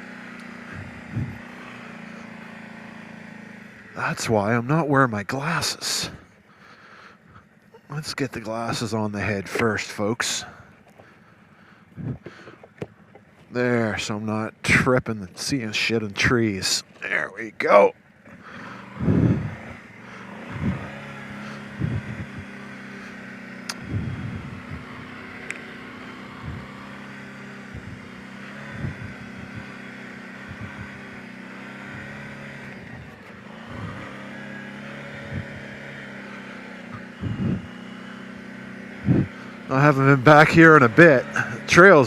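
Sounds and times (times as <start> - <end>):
atv engine running: 0.0 - 42.0
short low thumps: 0.8 - 1.4.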